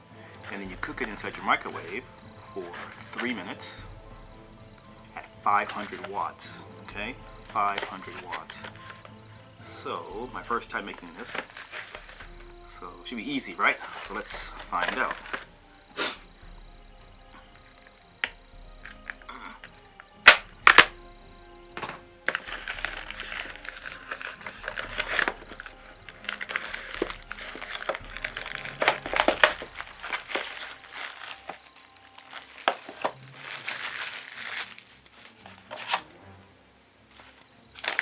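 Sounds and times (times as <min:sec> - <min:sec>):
background music: 0:00.0 - 0:38.0
packaging crinkling and rustling: 0:00.4 - 0:03.9, 0:05.2 - 0:06.4, 0:07.6 - 0:09.1, 0:10.8 - 0:12.5, 0:13.6 - 0:15.5, 0:21.8 - 0:36.1, 0:37.1 - 0:38.0.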